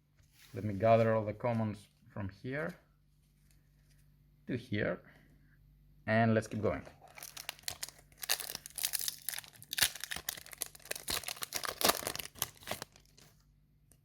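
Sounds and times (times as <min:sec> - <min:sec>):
foil wrapper tearing and crinkling: 0:07.0 - 0:13.4.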